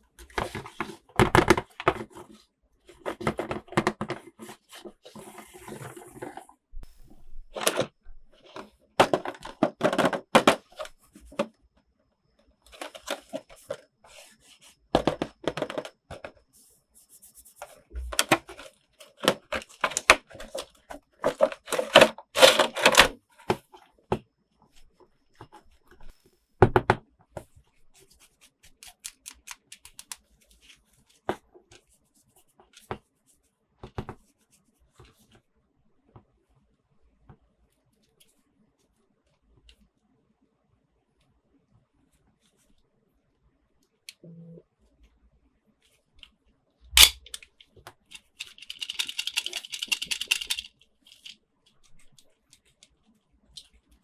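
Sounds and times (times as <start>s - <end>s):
small plastic pieces clicking: 28.8s - 30.2s, 47.0s - 47.6s, 48.2s - 51.4s.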